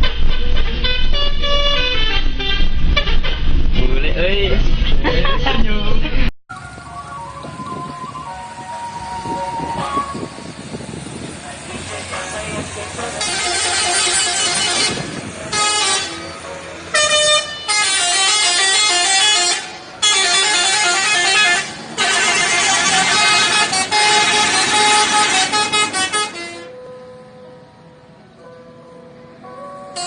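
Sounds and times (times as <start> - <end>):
musical air horn tune: 0.0 - 3.6, 7.0 - 10.4, 13.0 - 26.9.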